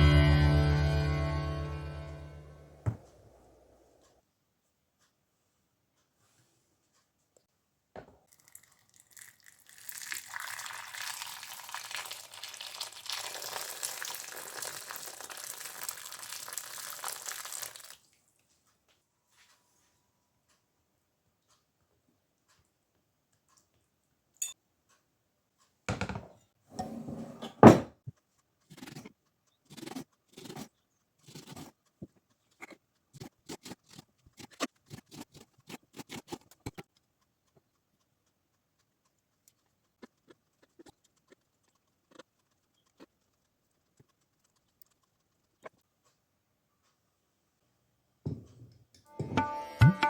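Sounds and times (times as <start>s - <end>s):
objects knocking and clattering: 25.9s - 28.0s, 48.3s - 49.4s.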